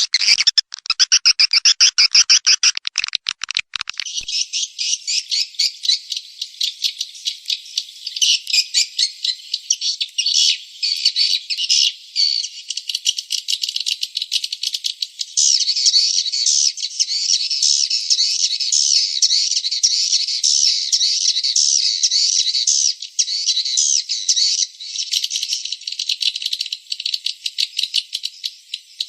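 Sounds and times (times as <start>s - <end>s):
high-pitched bird twittering: 0.0s - 12.4s.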